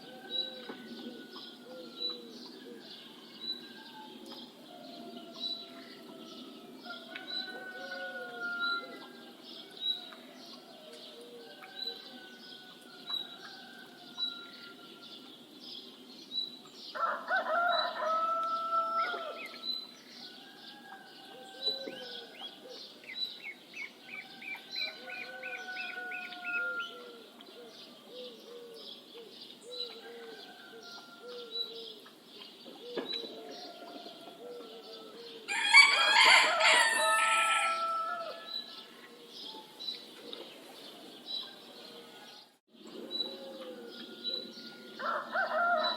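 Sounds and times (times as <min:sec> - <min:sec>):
rooster crowing: 0:04.8 - 0:09.4, 0:17.0 - 0:19.6, 0:24.2 - 0:27.2, 0:33.6 - 0:38.9, 0:43.5 - 0:45.9.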